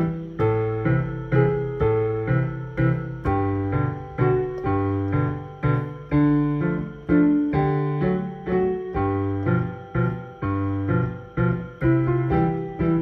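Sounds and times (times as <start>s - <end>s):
piano chords over bass line: 0.0s - 13.0s.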